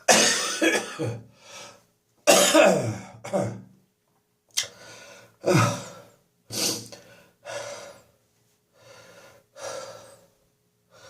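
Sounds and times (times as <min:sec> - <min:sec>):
heavy gasping breaths: 0:04.6 - 0:08.1.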